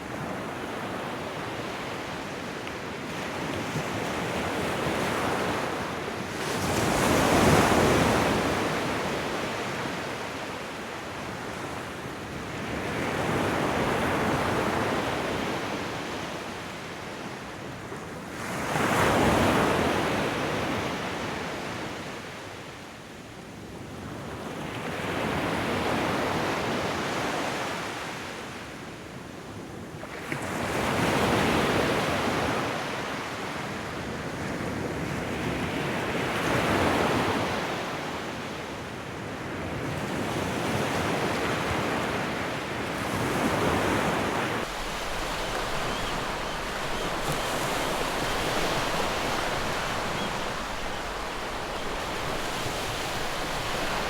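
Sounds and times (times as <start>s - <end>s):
ocean waves breaking: 43.2s - 54.0s.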